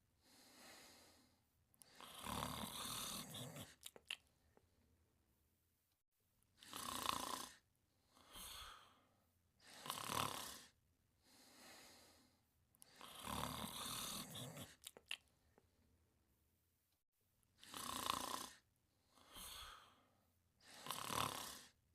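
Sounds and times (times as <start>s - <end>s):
soft breath out: 0.2s - 2.2s, 8.0s - 9.9s, 11.2s - 13.2s, 19.0s - 20.8s
person snoring: 1.8s - 4.0s, 6.6s - 7.6s, 8.2s - 9.0s, 9.6s - 10.8s, 12.8s - 15.1s, 17.6s - 18.6s, 19.2s - 21.8s.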